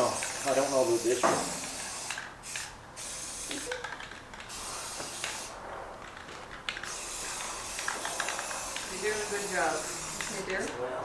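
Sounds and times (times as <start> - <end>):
aerosol spray can hissing: 0.0 - 3.8, 4.5 - 5.5, 6.8 - 10.7.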